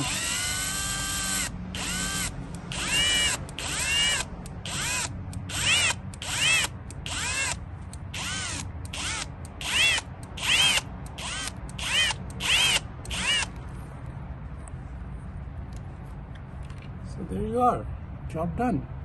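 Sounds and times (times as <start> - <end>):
cordless drill motor whine: 0.0 - 13.5.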